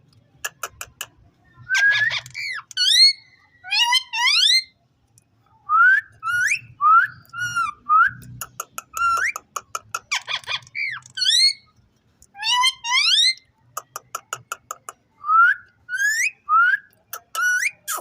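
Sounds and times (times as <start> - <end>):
parakeet chattering clicks: 0.4 - 1.2, 8.3 - 11.4, 13.3 - 15.0.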